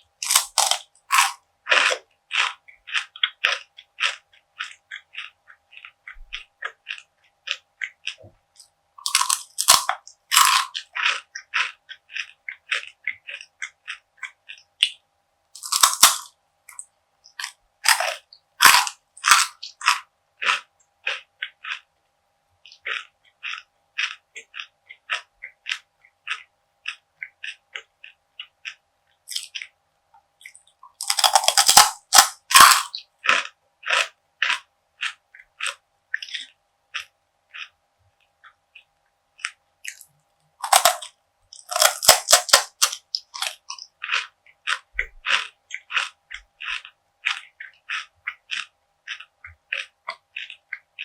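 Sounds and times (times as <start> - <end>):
crackling bites of crunchy brittle: 0.1 - 15.0, 15.6 - 21.9, 22.7 - 29.8, 30.4 - 37.7, 39.4 - 50.9
crisp chewing crunches: 0.1 - 15.0, 15.6 - 21.9, 22.6 - 51.0.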